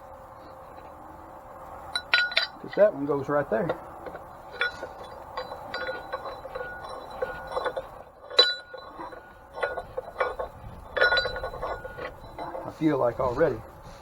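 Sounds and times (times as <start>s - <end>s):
metal parts clinking and knocking: 2.0s - 2.9s, 3.6s - 13.0s.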